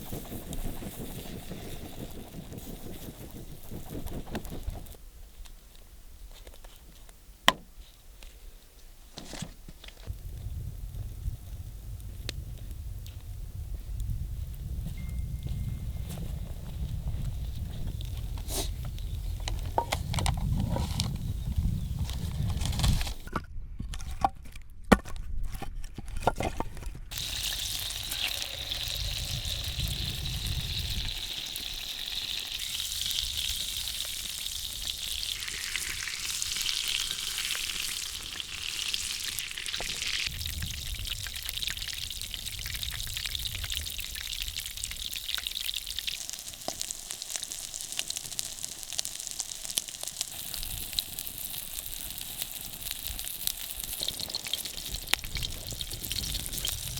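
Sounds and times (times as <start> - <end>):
food sizzling in a pan: 27.1 - 56.9.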